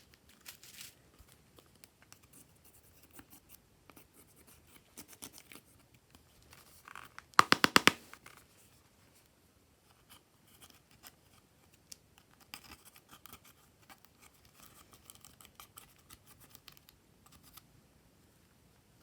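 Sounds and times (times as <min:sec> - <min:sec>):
sticky slime clicks: 0:07.4 - 0:08.2.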